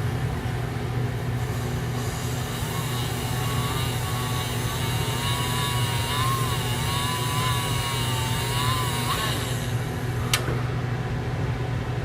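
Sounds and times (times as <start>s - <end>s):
sharpening wheel motor humming: 1.4s - 10.5s
metal tool grinding on wheel: 2.0s - 9.9s.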